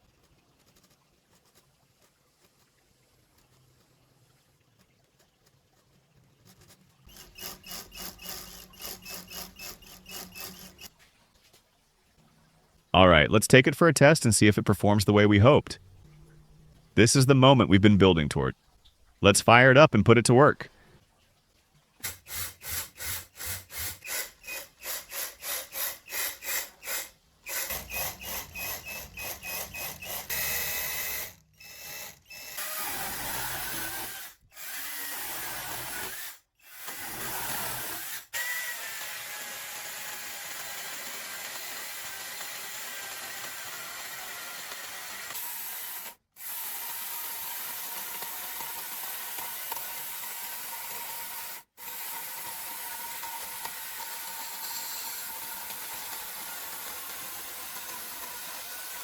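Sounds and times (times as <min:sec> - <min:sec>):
mini chainsaw cutting wood: 0:07.1 - 0:10.9, 0:22.0 - 0:59.0.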